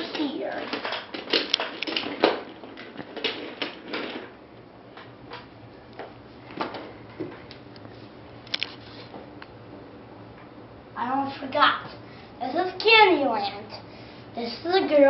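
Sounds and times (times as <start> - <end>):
toys clacking and knocking: 0.0 - 4.4.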